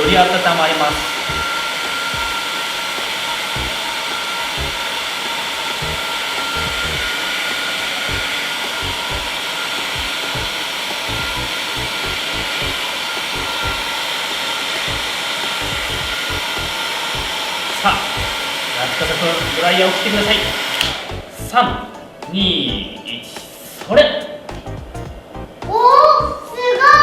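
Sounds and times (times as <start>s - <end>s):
hair dryer blowing air: 0.0s - 21.1s.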